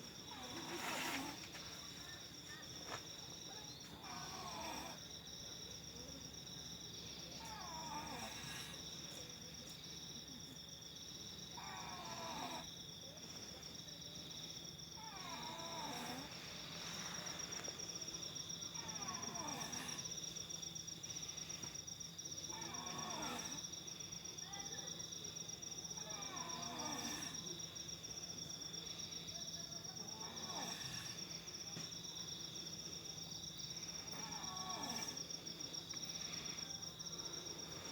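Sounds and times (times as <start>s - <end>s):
insects chirping: 0.0s - 37.9s
person snoring: 15.1s - 17.6s, 22.6s - 23.6s, 30.2s - 31.2s.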